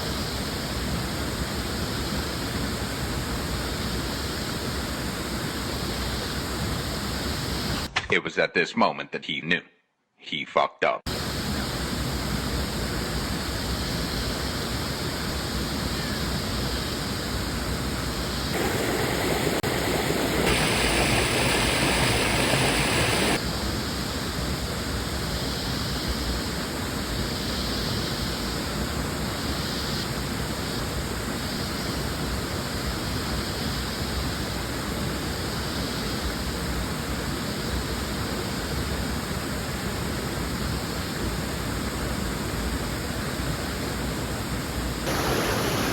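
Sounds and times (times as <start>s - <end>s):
waterfall and river rushing: 18.5s - 23.4s, 45.0s - 45.9s.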